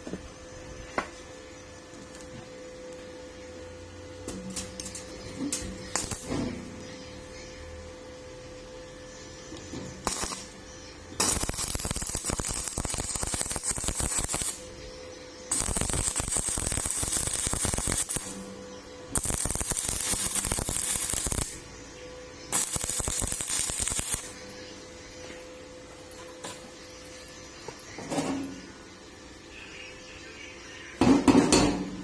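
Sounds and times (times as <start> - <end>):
steady hum: 0.0 - 32.0
welding arc crackle and sizzle: 4.3 - 6.9, 9.9 - 21.8, 22.4 - 25.1.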